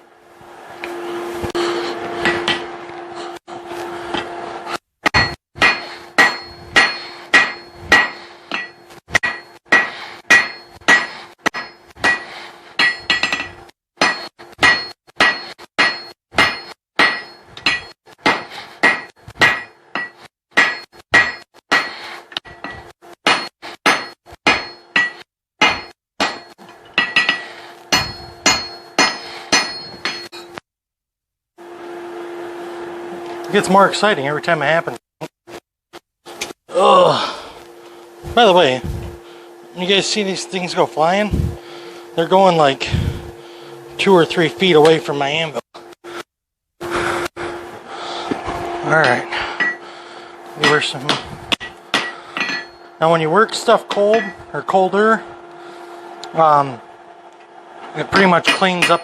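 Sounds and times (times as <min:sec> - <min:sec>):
hammer striking steel on anvil: 0:00.8 - 0:02.9, 0:05.0 - 0:30.6, 0:48.3 - 0:49.8, 0:50.6 - 0:54.7, 0:57.9 - 0:59.0.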